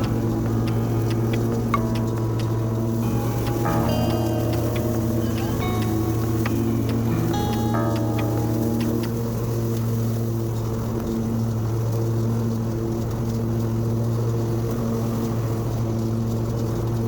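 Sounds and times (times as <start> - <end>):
lawn mower engine running: 0.0 - 10.2.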